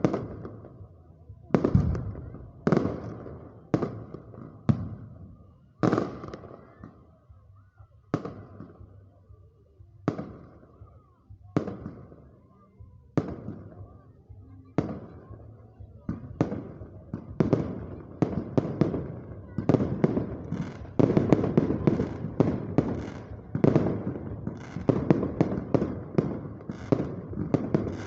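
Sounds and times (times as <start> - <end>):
fireworks rumble and crackle: 0.0 - 28.0
fireworks bangs: 1.5 - 5.2, 16.1 - 28.0.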